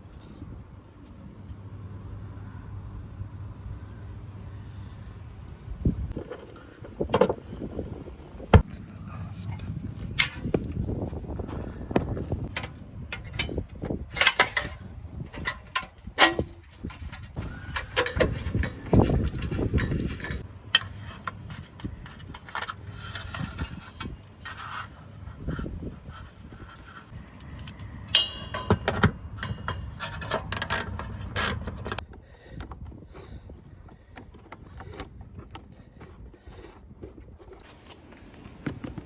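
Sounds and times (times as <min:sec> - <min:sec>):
clinks and knocks of metal tools: 0:00.0 - 0:01.6, 0:12.4 - 0:24.9, 0:26.6 - 0:32.0.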